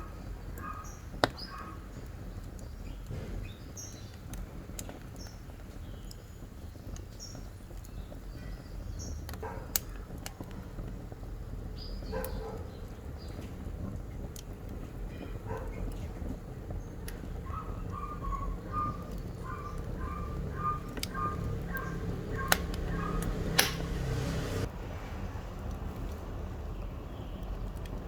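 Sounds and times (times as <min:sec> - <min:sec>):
wood fire crackling: 0:00.0 - 0:28.0
animal calls chirping: 0:17.4 - 0:23.9.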